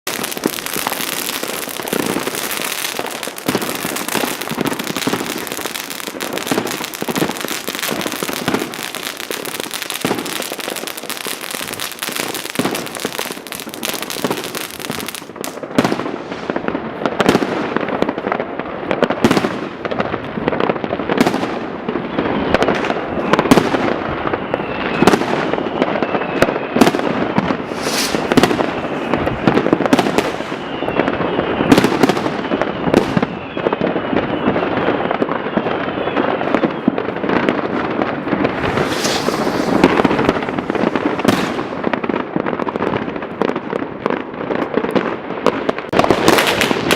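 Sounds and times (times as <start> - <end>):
fireworks bangs and booms: 0.0 - 46.9
fireworks crackling and popping: 0.0 - 46.9
faint falling whistle: 24.4 - 26.8, 27.8 - 36.9, 38.7 - 40.4.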